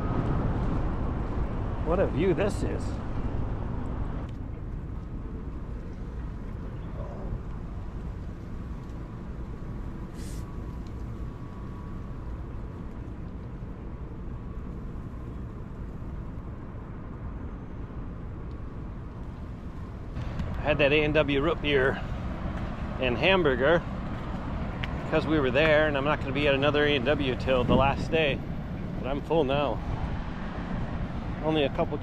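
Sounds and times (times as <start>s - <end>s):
wind and road noise: 0.0s - 32.0s
brief hiss: 10.1s - 10.6s.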